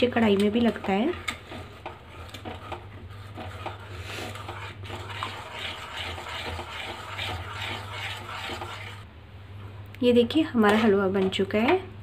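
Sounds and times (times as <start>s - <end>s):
spoon scraping a pan: 0.0s - 9.0s.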